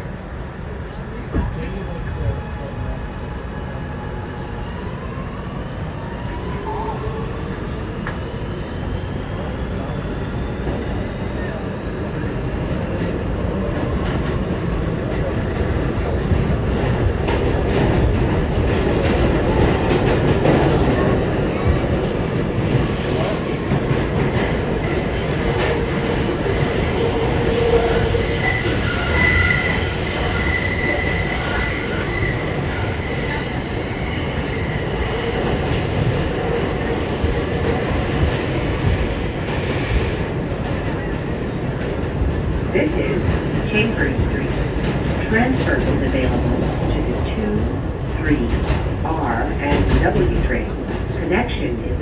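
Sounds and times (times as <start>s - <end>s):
subway wheel and track rumble: 0.0s - 52.0s
high-pitched wheel squeal: 25.7s - 35.5s.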